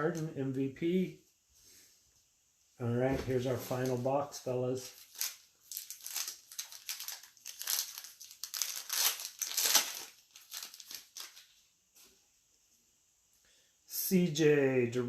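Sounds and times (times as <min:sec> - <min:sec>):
plastic wrapping crinkling and tearing: 0:03.4 - 0:04.1, 0:04.8 - 0:11.6.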